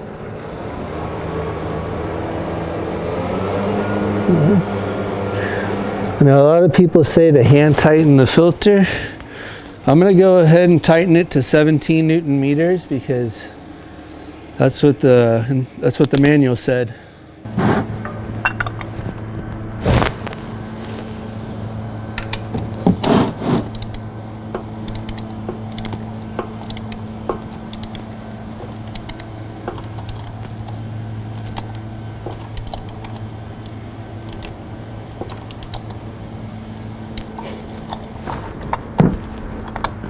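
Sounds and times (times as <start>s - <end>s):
steady low hum: 0.0s - 40.0s
metal hand tools clinking: 18.0s - 18.9s.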